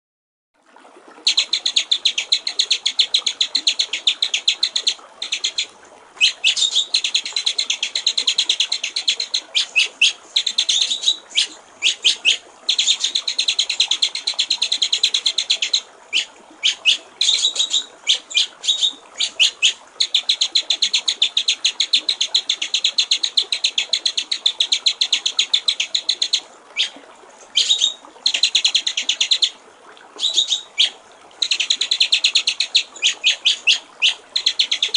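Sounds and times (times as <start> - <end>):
trickling water: 0.6 - 34.9
bird singing rapid rattling notes: 30.2 - 34.9.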